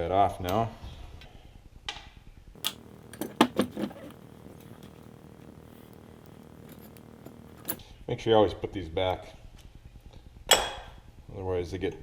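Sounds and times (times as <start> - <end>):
low steady background hum: 2.6 - 7.8.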